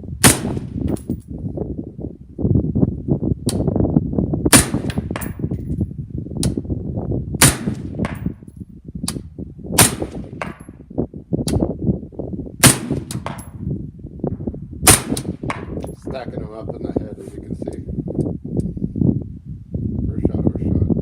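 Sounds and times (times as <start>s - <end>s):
steady low rumble: 0.0s - 21.0s
rifle shots: 0.2s - 0.7s, 4.5s - 5.3s, 7.4s - 8.2s, 9.8s - 10.6s, 12.6s - 13.5s, 14.9s - 15.7s.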